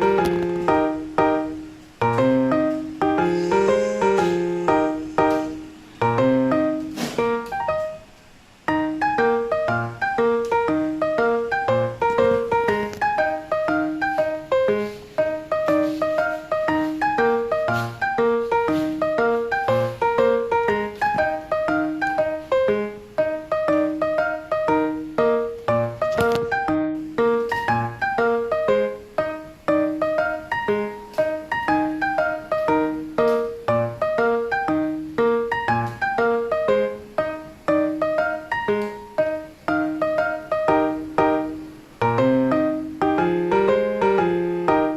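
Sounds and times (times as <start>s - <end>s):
piano music: 0.0s - 44.9s.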